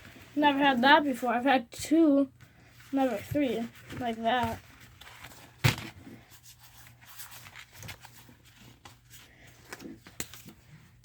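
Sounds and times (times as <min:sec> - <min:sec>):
cards rubbing and tapping: 0:03.1 - 0:10.8.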